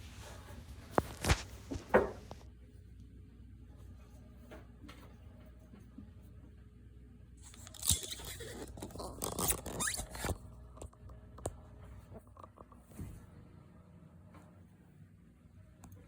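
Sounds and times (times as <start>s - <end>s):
paper rustling and crinkling: 0.0s - 2.4s.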